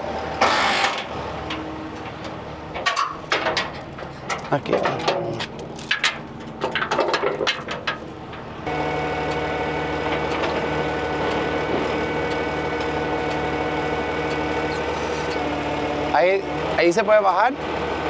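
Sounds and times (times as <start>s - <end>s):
diesel engine idling: 0.0s - 18.0s
knocks and clatters: 0.4s - 8.7s.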